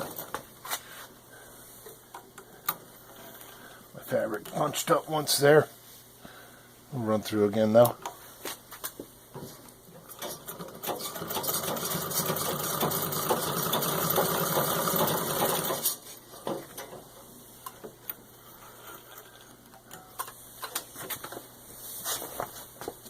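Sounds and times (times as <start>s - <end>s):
treadle sewing machine stitching: 10.2s - 15.9s.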